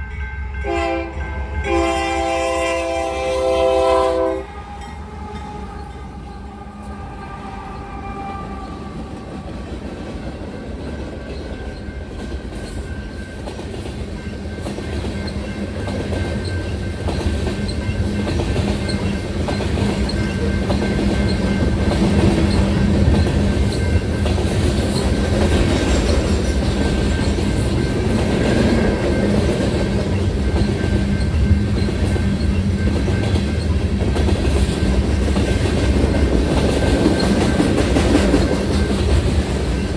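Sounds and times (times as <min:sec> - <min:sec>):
railroad crossing bell dinging: 0:00.0 - 0:34.6
diesel locomotive engines rumbling: 0:00.0 - 0:39.9
train wheels on rails: 0:00.0 - 0:39.9
train horn: 0:00.5 - 0:09.9.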